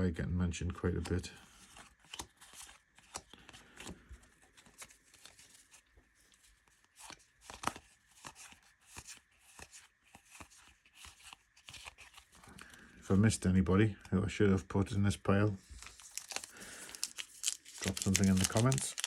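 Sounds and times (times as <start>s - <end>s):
trading cards being sorted: 0.8s - 13.3s, 15.6s - 19.0s.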